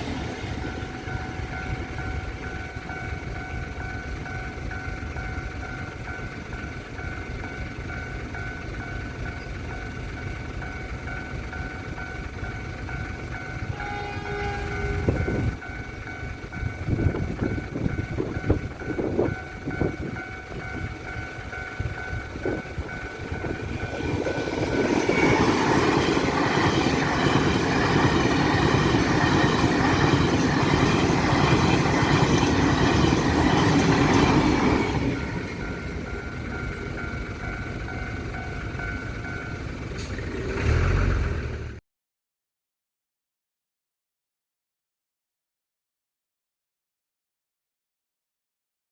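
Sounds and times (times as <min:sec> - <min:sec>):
level crossing signal ringing: 0:00.0 - 0:40.0
train clattering past: 0:00.0 - 0:41.8
train horn blast: 0:13.7 - 0:15.5
wind noise on microphone: 0:14.9 - 0:15.6, 0:16.6 - 0:21.0.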